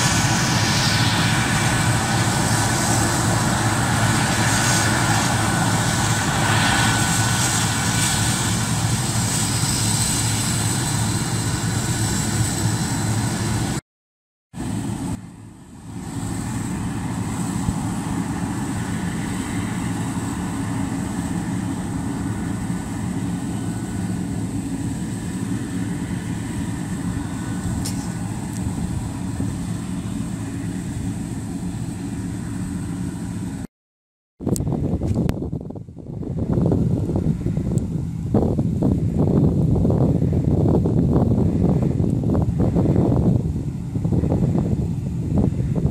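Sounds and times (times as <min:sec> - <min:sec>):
combine harvester running: 0:00.0 - 0:13.8, 0:14.6 - 0:33.7.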